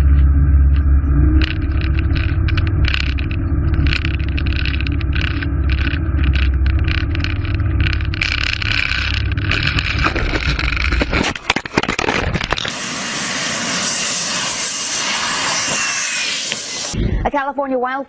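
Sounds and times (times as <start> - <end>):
aircraft low rumble: 0.0 - 17.3
sharp cracks: 1.4 - 12.8
loud steady hiss: 12.6 - 17.0.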